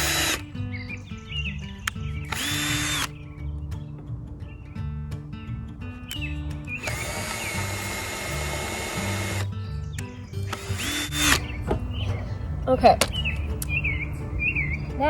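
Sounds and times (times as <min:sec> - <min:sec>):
electric drill whining: 0:00.0 - 0:00.5, 0:02.2 - 0:03.2, 0:06.8 - 0:09.5, 0:10.4 - 0:11.5.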